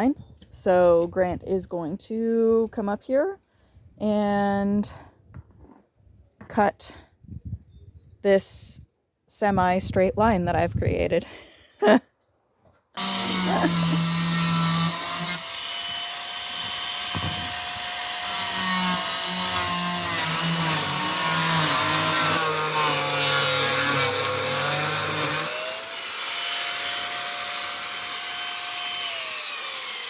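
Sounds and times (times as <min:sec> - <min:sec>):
power saw cutting: 0:13.0 - 0:30.0
saw blade spinning: 0:13.0 - 0:30.0.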